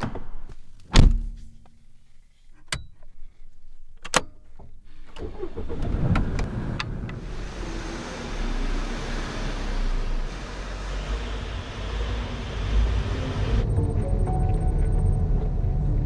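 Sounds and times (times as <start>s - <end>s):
heavy thud: 0.8s - 1.6s
car engine starting and idling: 4.8s - 16.0s.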